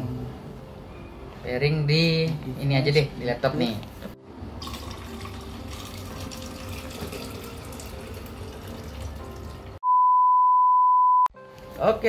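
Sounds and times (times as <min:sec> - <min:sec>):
rushing water from a tap: 0:04.6 - 0:09.8
single-pitch bleep: 0:09.8 - 0:11.3.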